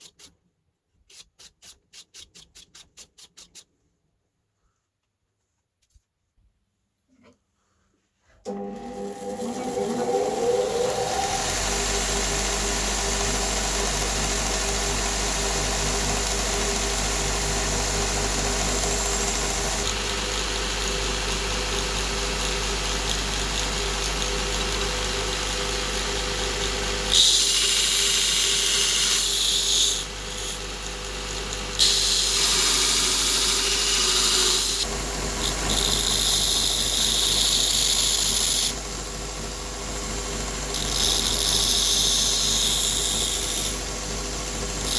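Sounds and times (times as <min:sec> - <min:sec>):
belt grinder motor humming: 0:08.5 - 0:30.6, 0:31.3 - 0:38.8, 0:40.7 - 0:43.8.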